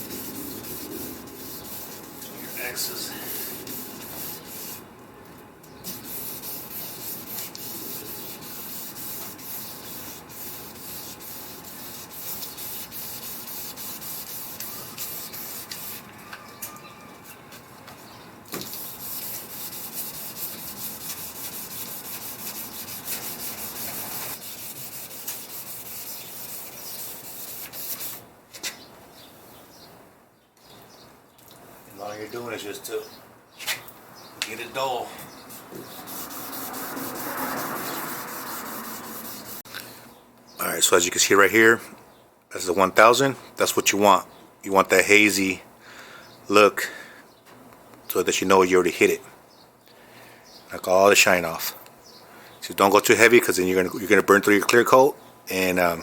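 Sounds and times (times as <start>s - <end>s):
wet sandpaper rasping: 0.0s - 4.8s, 5.9s - 16.1s, 18.6s - 28.2s, 35.5s - 39.7s.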